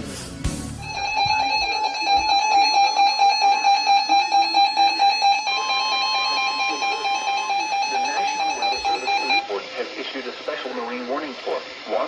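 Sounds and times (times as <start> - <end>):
higher electronic tone: 0.8 - 9.5
pulsing electronic alert tone: 0.8 - 9.5.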